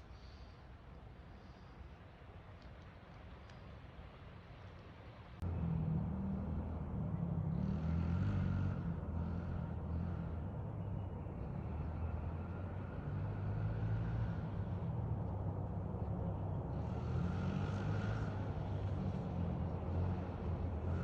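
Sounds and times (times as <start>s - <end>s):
engine humming: 5.4s - 21.0s.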